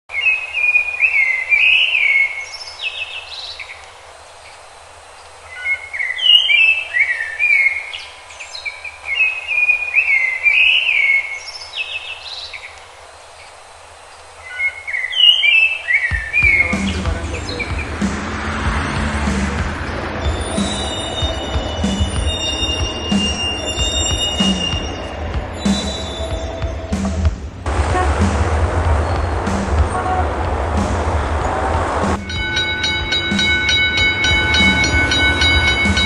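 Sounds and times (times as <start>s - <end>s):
songbird whistling: 0.1s - 3.8s, 5.5s - 12.8s, 14.4s - 17.8s, 19.8s - 27.2s
faint steady hiss: 0.1s - 17.8s.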